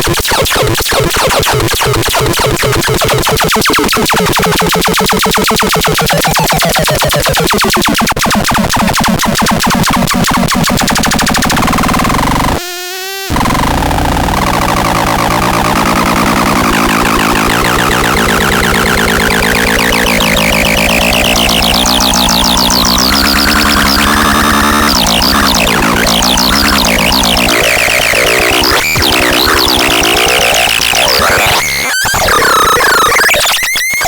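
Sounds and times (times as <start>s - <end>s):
harsh synthesizer pulsing tones: 0.0s - 34.0s.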